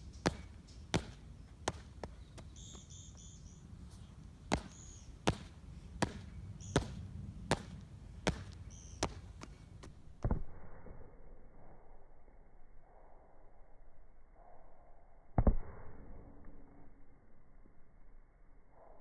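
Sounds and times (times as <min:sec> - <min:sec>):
feet landing from jumps: 0:00.0 - 0:10.3.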